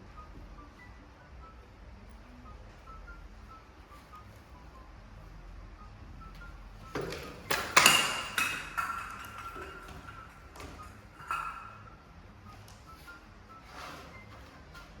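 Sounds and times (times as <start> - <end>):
hard objects knocking and clinking: 6.9 - 11.8.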